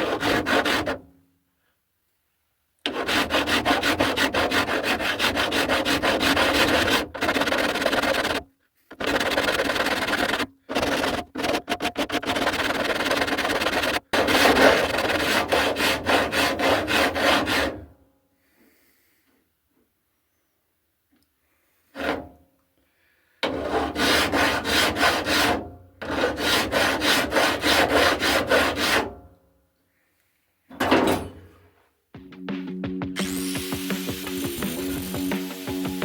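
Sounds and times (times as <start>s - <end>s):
hand file rasping on steel: 0.0s - 1.0s, 2.9s - 17.9s, 21.9s - 22.3s, 23.5s - 29.1s.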